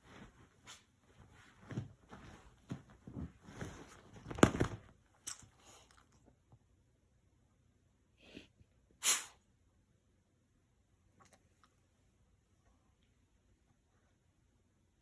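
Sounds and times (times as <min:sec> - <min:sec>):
dog snorting and sneezing: 0:09.0 - 0:09.4.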